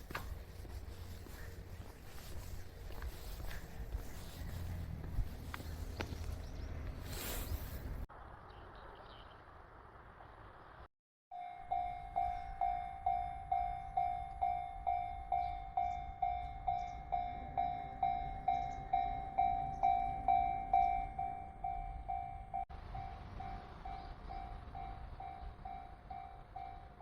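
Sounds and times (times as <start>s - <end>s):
level crossing warning bell: 11.3s - 27.0s.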